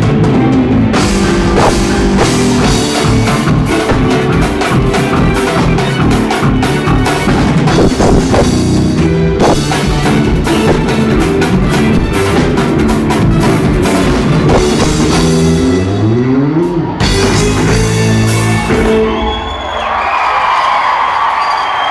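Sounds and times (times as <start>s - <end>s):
live rock band playing: 0.0s - 19.6s
crowd cheering: 0.0s - 21.9s.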